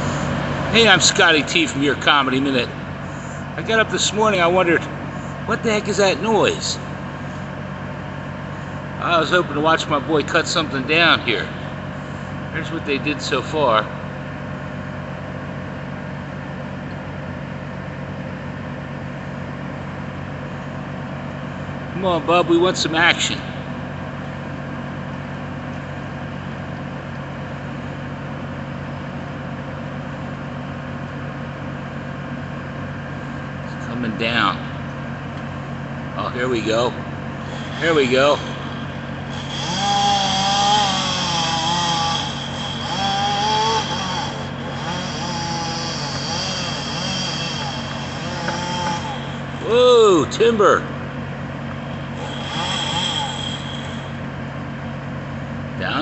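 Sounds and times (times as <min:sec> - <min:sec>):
chainsaw cutting: 0:00.0 - 0:07.7, 0:36.4 - 0:50.8, 0:51.6 - 0:54.4
engine idling: 0:00.0 - 0:56.0.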